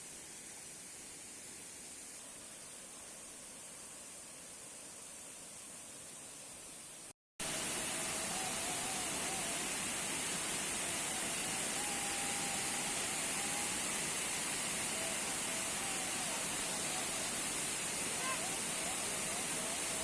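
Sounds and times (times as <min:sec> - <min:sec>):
waterfall rushing: 0:07.4 - 0:20.0.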